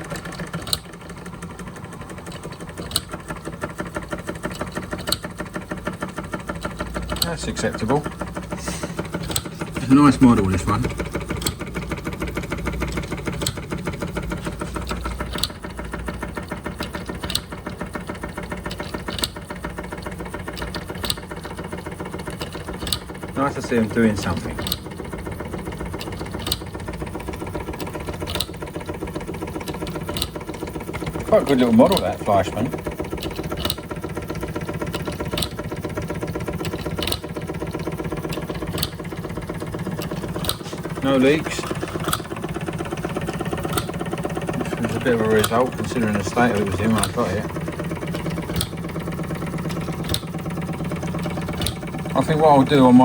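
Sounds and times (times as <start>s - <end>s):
toy steam engine clatter: 0.0s - 53.0s.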